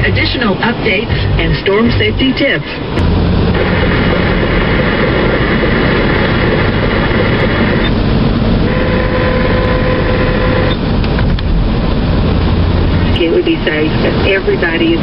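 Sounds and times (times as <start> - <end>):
car road and engine noise: 0.0 - 15.0
steady tone: 0.0 - 15.0.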